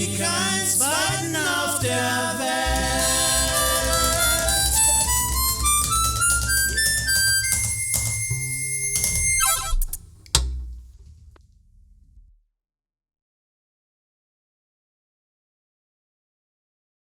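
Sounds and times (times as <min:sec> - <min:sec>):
blues harmonica: 0:00.0 - 0:10.0.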